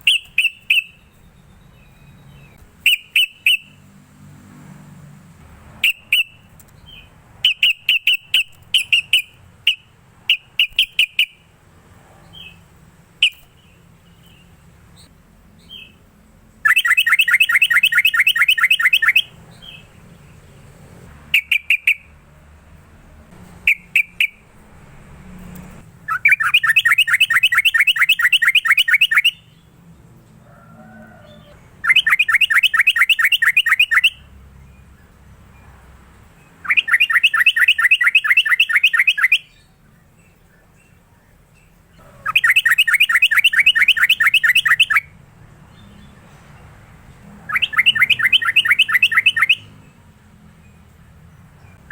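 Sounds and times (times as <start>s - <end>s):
bird singing: 0.0s - 3.9s, 5.8s - 11.5s, 12.2s - 22.2s, 23.6s - 24.6s, 26.0s - 46.8s, 47.4s - 51.9s
fast chattering bird trills: 7.4s - 11.4s, 16.6s - 19.9s, 26.0s - 29.4s, 31.8s - 34.2s, 36.6s - 39.6s, 41.9s - 45.1s, 47.4s - 49.7s.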